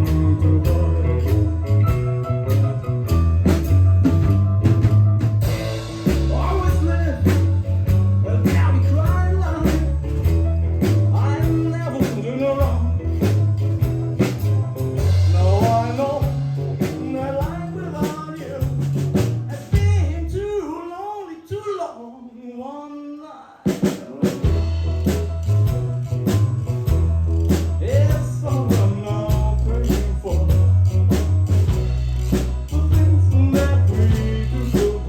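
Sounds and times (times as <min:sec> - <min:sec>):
person singing: 0:00.0 - 0:02.0, 0:06.0 - 0:10.0, 0:11.1 - 0:13.0, 0:15.2 - 0:24.8, 0:27.8 - 0:31.0, 0:32.7 - 0:35.0
live band playing: 0:00.0 - 0:20.5, 0:23.7 - 0:35.0.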